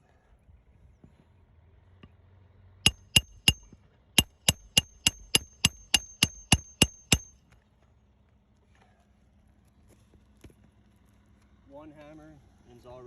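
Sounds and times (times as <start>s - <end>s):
hammer driving nail into shingles: 2.9s - 7.4s.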